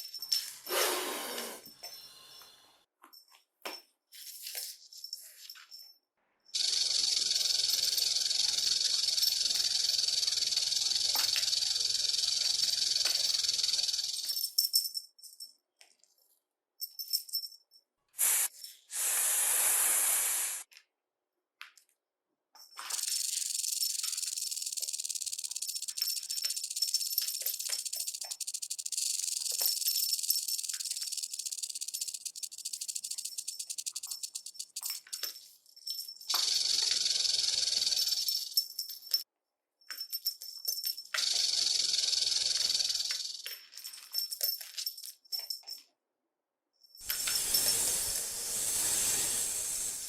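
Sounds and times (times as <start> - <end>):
snake hissing: 0.7 - 1.7, 6.6 - 14.2, 18.2 - 20.6, 47.0 - 50.0
rattlesnake rattle: 6.6 - 14.7, 22.8 - 39.2, 40.6 - 44.6, 47.0 - 50.0.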